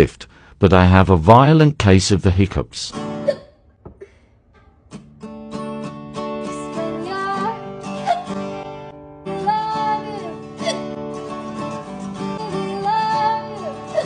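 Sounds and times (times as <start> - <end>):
acoustic guitar strummed: 2.9 - 3.3, 4.9 - 14.0
woman hiccuping: 3.2 - 4.8
woman singing: 6.4 - 11.0, 11.6 - 14.0.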